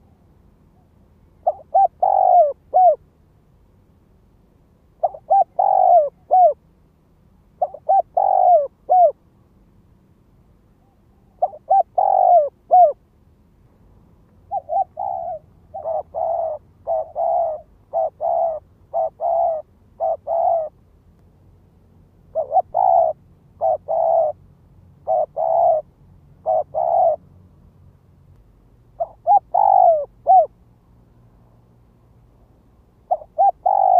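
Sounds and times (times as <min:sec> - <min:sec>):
dove cooing: 0:01.4 - 0:03.0, 0:05.0 - 0:06.6, 0:07.6 - 0:09.2, 0:10.8 - 0:13.0, 0:14.5 - 0:20.8, 0:22.3 - 0:24.4, 0:25.0 - 0:27.2, 0:29.0 - 0:30.6, 0:33.1 - 0:33.9.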